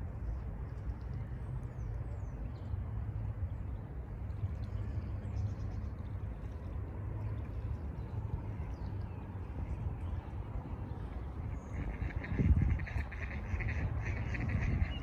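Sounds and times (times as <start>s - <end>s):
low outdoor rumble: 0.0s - 15.0s.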